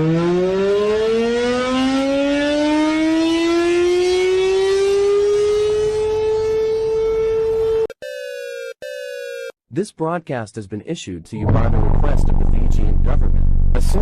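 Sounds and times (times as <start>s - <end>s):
siren winding up: 0.0s - 9.5s.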